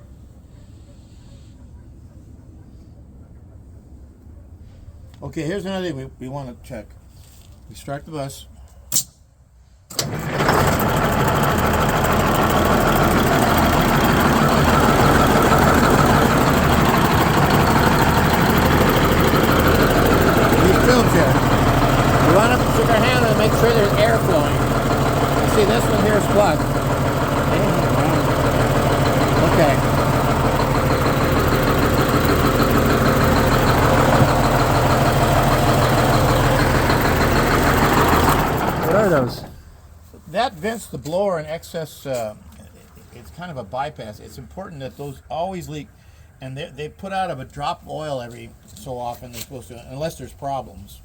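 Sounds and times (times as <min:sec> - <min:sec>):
diesel engine cranking: 0:09.9 - 0:39.9
diesel engine idling: 0:09.9 - 0:40.0.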